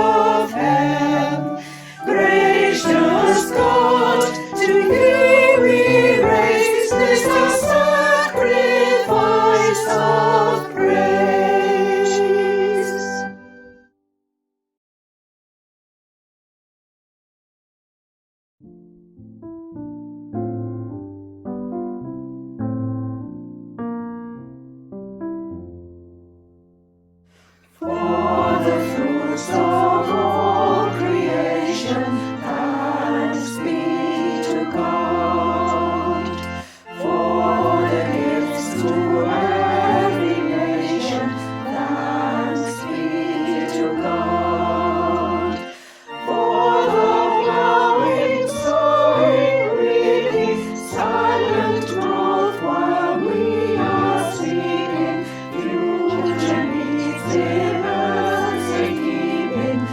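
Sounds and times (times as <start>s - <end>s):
choir singing sustained chords: 0.0s - 13.8s, 27.8s - 59.9s.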